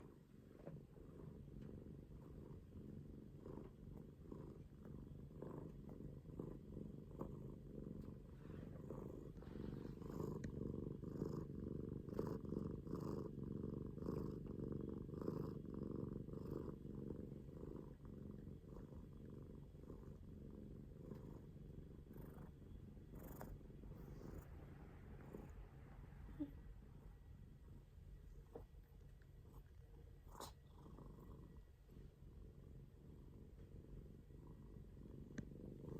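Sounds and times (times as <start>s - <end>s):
cat purring: 0.0s - 35.9s.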